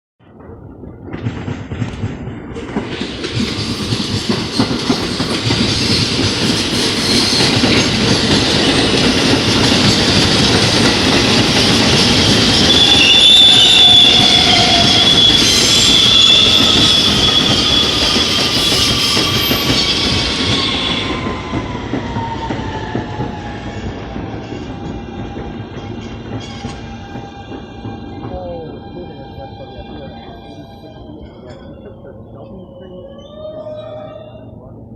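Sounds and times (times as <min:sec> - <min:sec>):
train wheels rumbling on rails: 0:00.2 - 0:34.9
high wheel squeal: 0:11.9 - 0:21.5.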